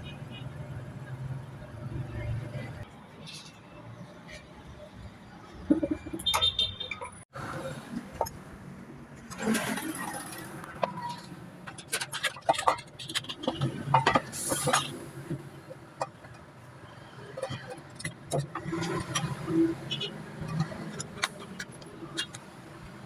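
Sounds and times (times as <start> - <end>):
tools clicking and scraping: 9.2 - 16.5, 17.2 - 22.8.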